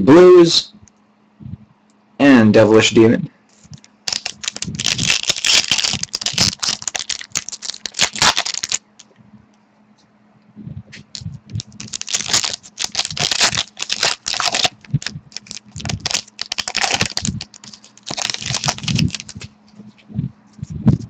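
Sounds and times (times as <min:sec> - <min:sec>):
faint low hum: 0:00.0 - 0:21.0
wrapper crinkling and cards rustling: 0:03.6 - 0:09.1, 0:11.0 - 0:19.8.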